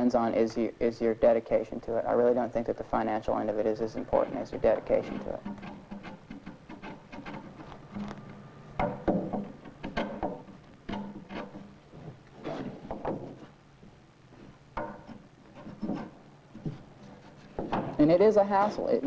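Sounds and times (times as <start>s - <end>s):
steady low hum: 0.0s - 19.0s
hand tool knocking on wood: 8.8s - 11.7s.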